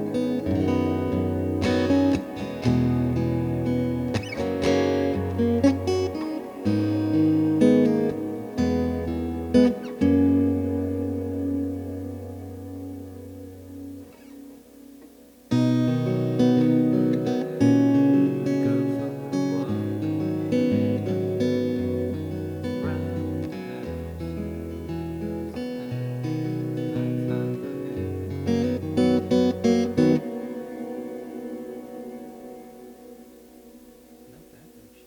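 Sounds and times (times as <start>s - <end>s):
acoustic guitar melody: 0.0s - 35.0s
strummed guitar chords: 0.0s - 35.0s.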